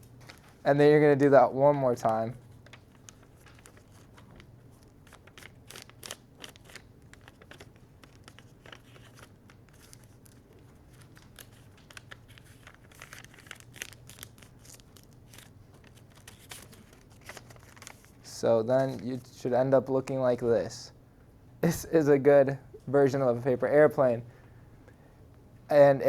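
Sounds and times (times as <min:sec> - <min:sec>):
paper folding and crinkling: 0:00.0 - 0:00.7, 0:01.8 - 0:19.0.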